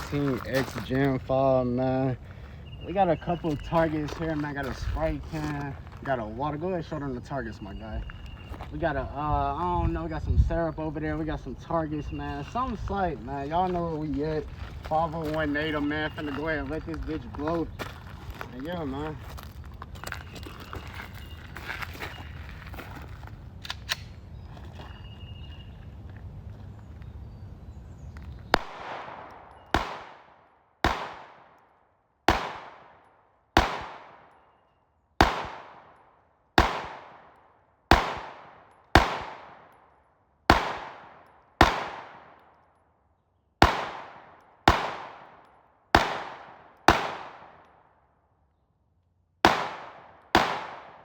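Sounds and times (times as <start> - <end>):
pistol shots with echo: 28.5 - 31.7, 32.3 - 34.6, 35.2 - 39.9, 40.5 - 42.5, 43.6 - 48.0, 49.4 - 51.0.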